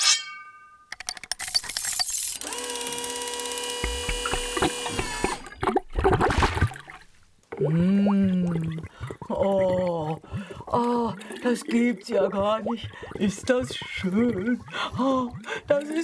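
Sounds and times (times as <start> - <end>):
ratcheting clicks: 0.9 - 5.6
mechanical buzzing whirr: 1.4 - 5.6
splash noise: 3.8 - 7.2.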